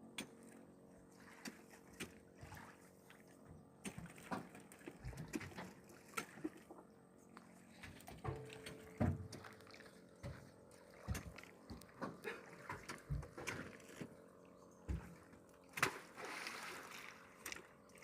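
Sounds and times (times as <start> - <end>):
boat knocking and thudding: 1.4 - 6.9, 7.7 - 16.2
water splash: 3.9 - 6.7, 14.9 - 17.7.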